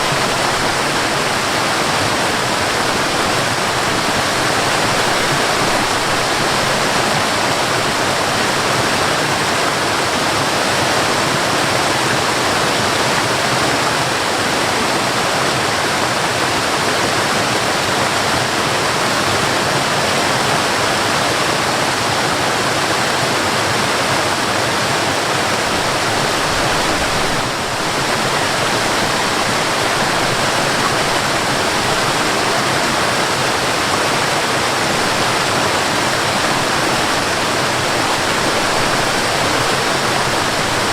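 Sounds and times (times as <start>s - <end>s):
waterfall rushing: 0.0s - 40.9s.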